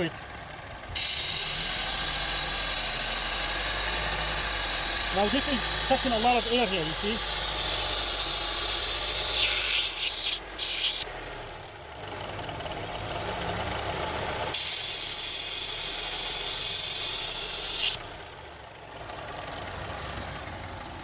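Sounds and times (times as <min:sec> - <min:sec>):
car engine idling: 0:00.0 - 0:21.0
air hissing into vacuum port: 0:01.0 - 0:11.1, 0:14.6 - 0:18.0.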